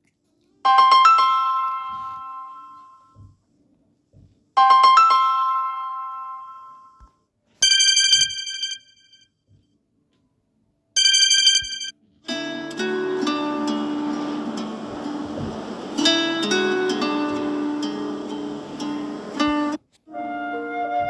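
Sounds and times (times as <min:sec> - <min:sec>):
music ringtone: 0:00.7 - 0:03.0, 0:04.6 - 0:07.0, 0:07.6 - 0:09.2, 0:11.0 - 0:11.9
bell-like phone chime: 0:00.7 - 0:03.1, 0:04.6 - 0:07.0, 0:07.6 - 0:09.2, 0:11.0 - 0:11.9
short high chime: 0:07.6 - 0:09.2, 0:11.0 - 0:11.9.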